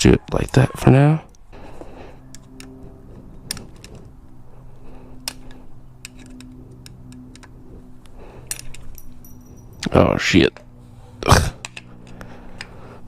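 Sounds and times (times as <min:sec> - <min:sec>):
steady low hum: 0:01.0 - 0:13.0
metal parts and tools clicking: 0:05.2 - 0:07.6, 0:08.4 - 0:10.0.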